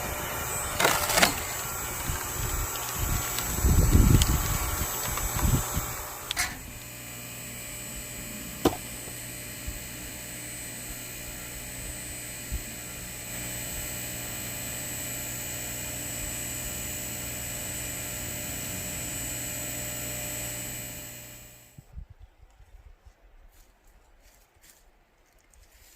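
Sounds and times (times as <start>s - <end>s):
log splitter motor hum: 0.0s - 21.8s
wood cracking: 0.1s - 6.6s.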